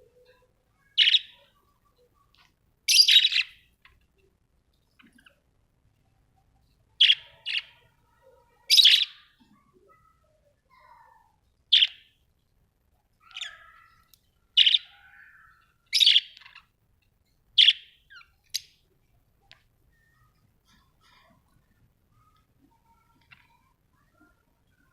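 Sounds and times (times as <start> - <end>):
faint soft bird chatter: 0.0 - 24.9
budgerigars chirping: 1.0 - 1.4, 2.9 - 3.6, 7.0 - 7.8, 11.7 - 12.0, 13.2 - 16.6, 17.6 - 18.7.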